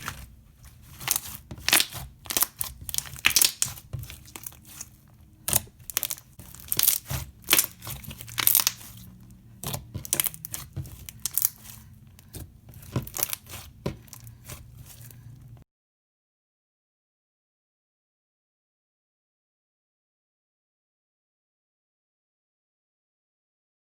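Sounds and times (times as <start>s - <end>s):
slime squished by hand: 0.0s - 15.6s.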